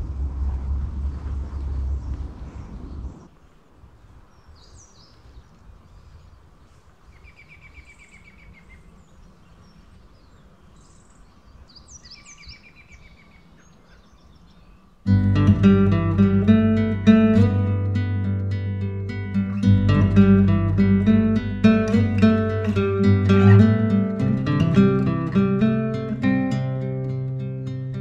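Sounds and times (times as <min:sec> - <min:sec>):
birds chirping: 0:00.0 - 0:28.0
acoustic guitar music: 0:15.1 - 0:28.0.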